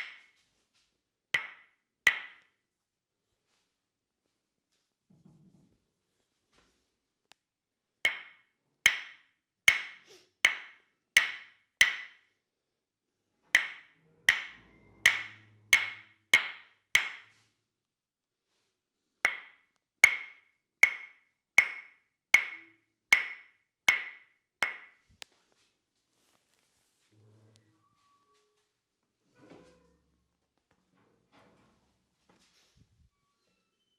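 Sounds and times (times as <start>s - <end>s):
wooden mallet tapping wooden wedge: 0.0s - 0.3s, 1.4s - 2.5s, 8.1s - 12.2s, 13.6s - 17.3s, 19.3s - 25.0s.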